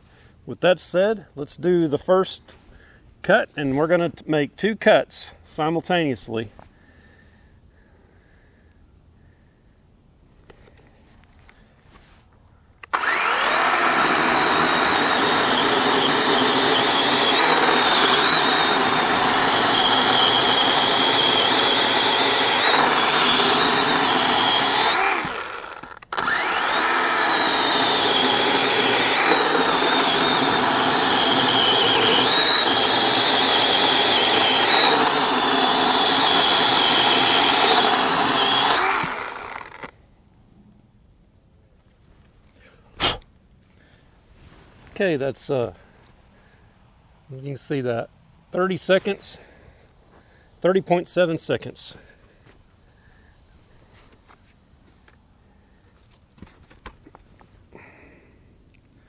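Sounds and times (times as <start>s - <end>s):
electric chainsaw cutting log: 12.8s - 39.9s.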